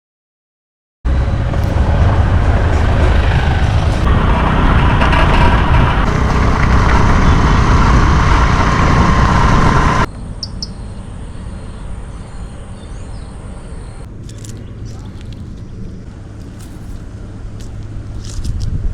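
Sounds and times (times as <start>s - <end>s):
strong wind buffeting microphone: 1.1s - 10.1s, 12.8s - 18.9s.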